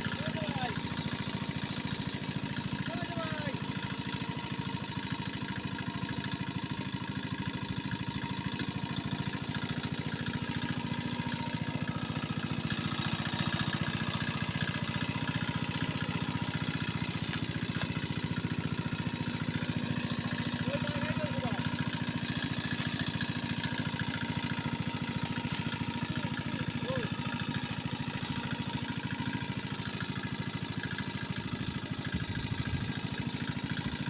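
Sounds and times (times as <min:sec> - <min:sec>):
small engine chugging: 0:00.0 - 0:34.0.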